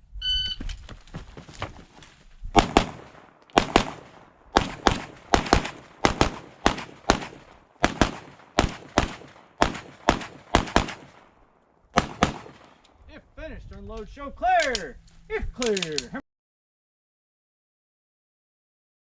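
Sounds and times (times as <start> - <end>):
gunshots: 2.5 - 12.9
faint gunfire pops: 2.6 - 13.0.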